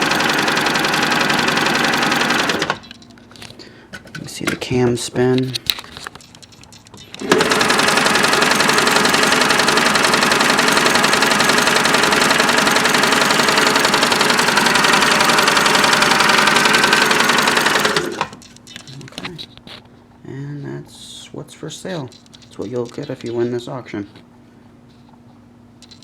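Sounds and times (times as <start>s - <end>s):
sewing machine running: 0.0s - 3.0s, 7.1s - 18.4s.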